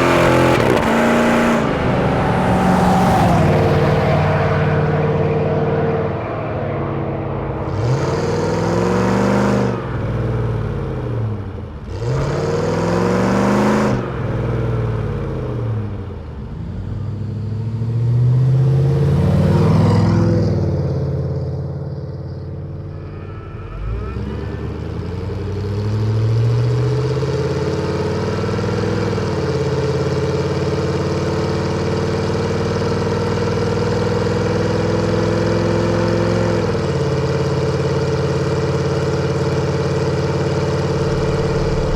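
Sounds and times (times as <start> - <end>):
engine revving: 0.0 - 14.9, 40.4 - 41.9.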